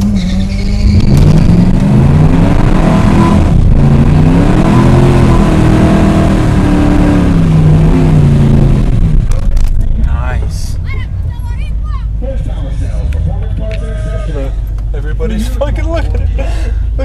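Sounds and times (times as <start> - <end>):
car engine revving hard: 0.0 - 9.4.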